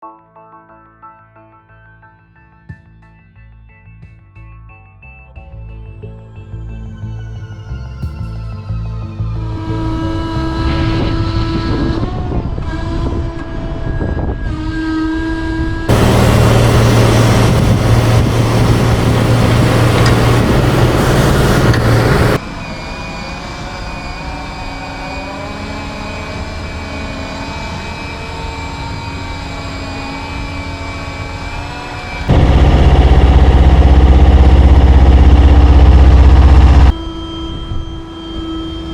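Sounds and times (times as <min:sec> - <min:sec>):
diesel engine humming under load: 0:15.9 - 0:22.4, 0:25.3 - 0:36.9
electric power unit whine: 0:15.9 - 0:38.9.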